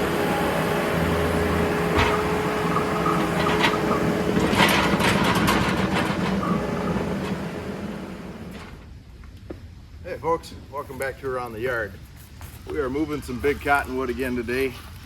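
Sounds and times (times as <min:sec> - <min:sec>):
diesel engine running: 0:00.0 - 0:08.8.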